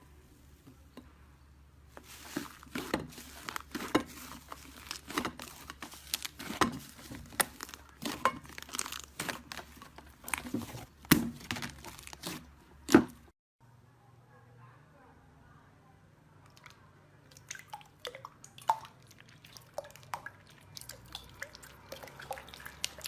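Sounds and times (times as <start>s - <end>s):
slime crackling and popping: 3.3s - 10.5s.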